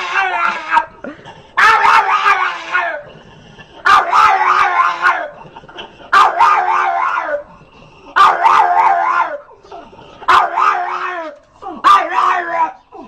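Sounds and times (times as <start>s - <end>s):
dog howling barks: 0.0s - 0.9s, 1.6s - 3.1s, 3.8s - 5.4s, 6.1s - 7.5s, 8.1s - 9.6s, 10.2s - 13.0s.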